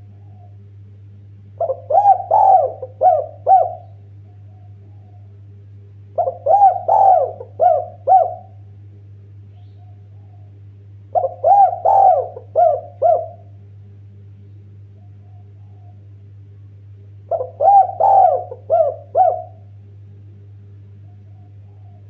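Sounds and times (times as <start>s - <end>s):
dove cooing: 0.0s - 0.7s, 1.6s - 5.4s, 6.1s - 8.7s, 9.5s - 13.6s, 14.9s - 16.2s, 17.3s - 19.8s, 20.9s - 22.0s
steady low hum: 0.0s - 22.0s.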